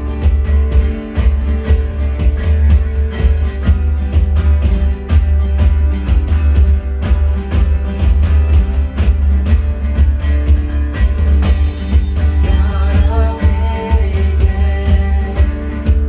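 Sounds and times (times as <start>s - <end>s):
steady beat with heavy bass: 0.0s - 16.0s
strummed guitar: 0.0s - 16.0s
person singing: 12.1s - 16.0s.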